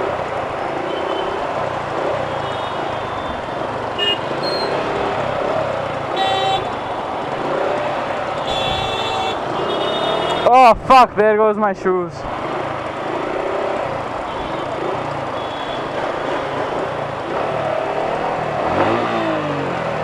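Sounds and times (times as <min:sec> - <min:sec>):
motorcycle engine and road noise: 0:00.0 - 0:20.0
vehicle horns honking: 0:00.8 - 0:01.4, 0:02.2 - 0:03.4, 0:04.0 - 0:04.8, 0:06.1 - 0:06.8, 0:08.4 - 0:10.5, 0:14.3 - 0:16.5.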